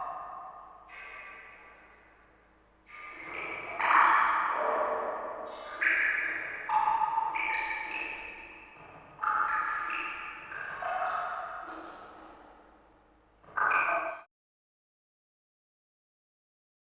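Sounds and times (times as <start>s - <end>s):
water drops plinking with echo: 0.0s - 1.9s, 2.9s - 12.6s.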